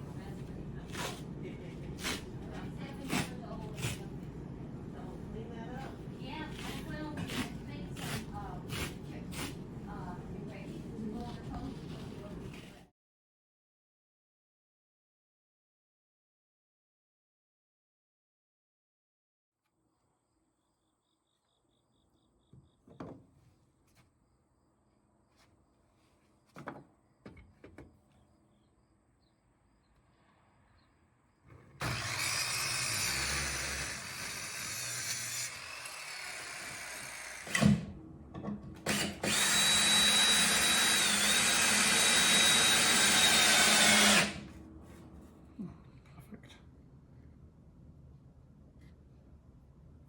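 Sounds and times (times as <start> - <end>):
power tool motor whine: 31.8 - 37.8, 38.8 - 44.5.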